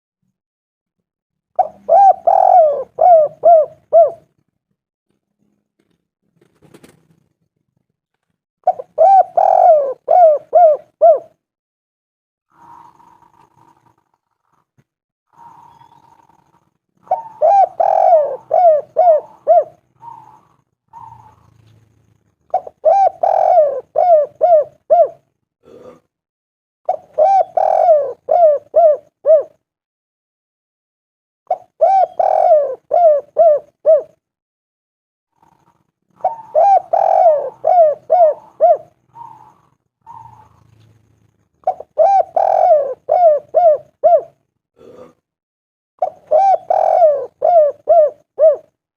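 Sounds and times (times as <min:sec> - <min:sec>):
dove cooing: 0:01.6 - 0:04.4, 0:08.6 - 0:11.4, 0:12.5 - 0:14.6, 0:15.3 - 0:25.3, 0:26.9 - 0:29.6, 0:31.5 - 0:34.2, 0:35.3 - 0:45.1, 0:46.0 - 0:48.8.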